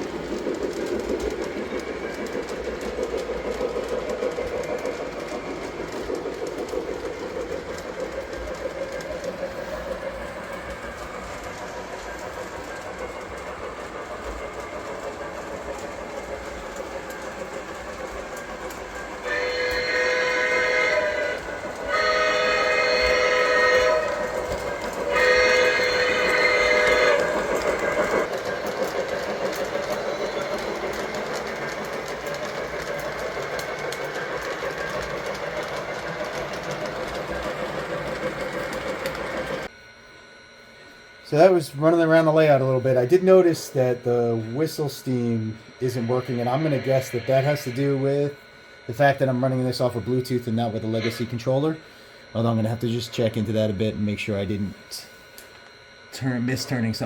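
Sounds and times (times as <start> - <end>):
model train running on track: 0.0 - 39.7, 40.3 - 57.0
steam whistle blasts: 19.2 - 28.2.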